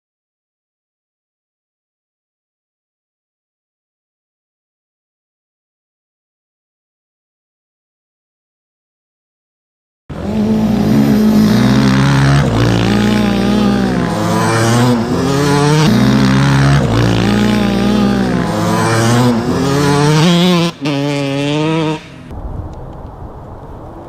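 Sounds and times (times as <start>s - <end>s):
dirt bike engine revving: 10.1s - 22.3s.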